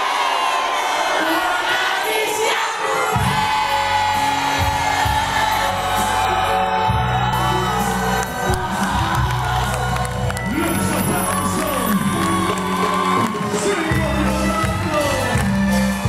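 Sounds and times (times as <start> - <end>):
crowd cheering and whooping: 0.0 - 16.0
person singing: 1.2 - 16.0
live cumbia band: 10.5 - 16.0.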